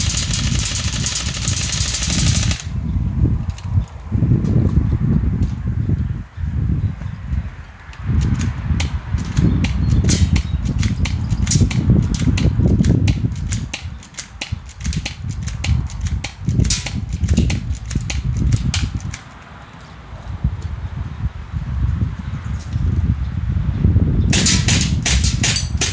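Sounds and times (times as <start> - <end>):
airsoft gun rapid shots: 0.0 - 2.8, 24.3 - 25.9.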